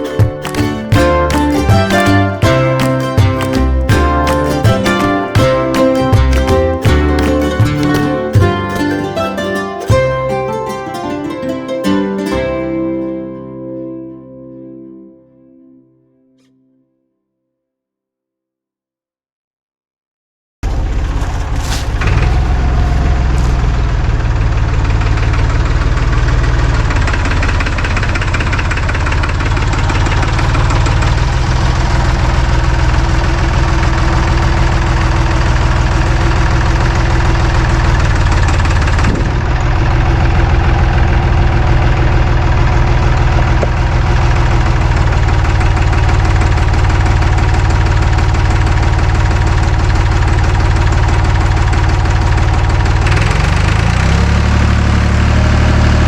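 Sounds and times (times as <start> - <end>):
vehicle engine running: 20.6 - 56.0.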